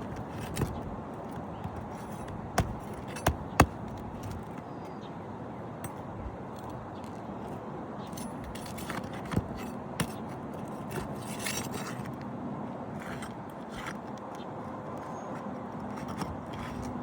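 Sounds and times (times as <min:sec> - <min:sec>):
tools scraping roof shingle: 0:00.0 - 0:04.6, 0:08.2 - 0:12.2, 0:12.9 - 0:17.0
sharp knocks: 0:02.6 - 0:04.0.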